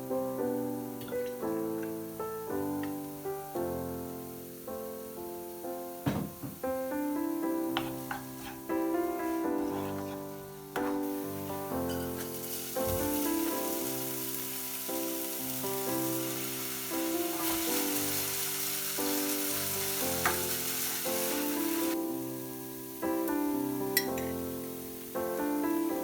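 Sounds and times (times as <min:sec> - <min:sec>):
food sizzling in a pan: 0:00.0 - 0:26.0
soft piano music: 0:00.0 - 0:26.0.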